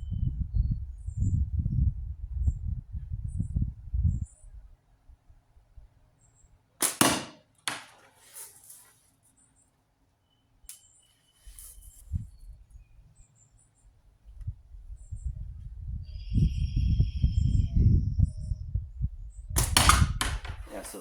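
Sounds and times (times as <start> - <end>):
ball striking can with ringing: 6.8 - 8.0.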